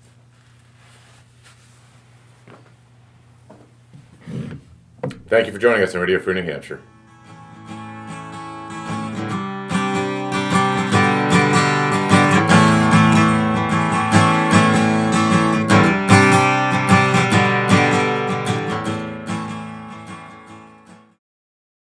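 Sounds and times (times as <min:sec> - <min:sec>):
strummed acoustic guitar music: 0:06.9 - 0:21.2.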